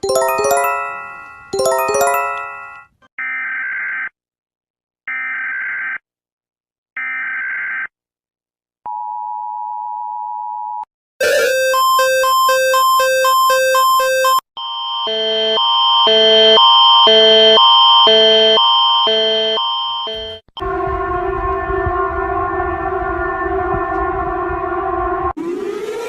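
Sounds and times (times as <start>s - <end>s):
ringing chime chords: 0.0s - 2.9s
two-tone attention signal: 11.2s - 14.4s.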